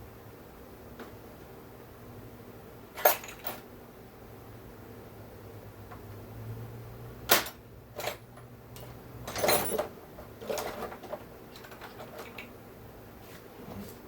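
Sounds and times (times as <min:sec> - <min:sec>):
metal tools clattering: 0:03.0 - 0:03.6, 0:07.3 - 0:12.5.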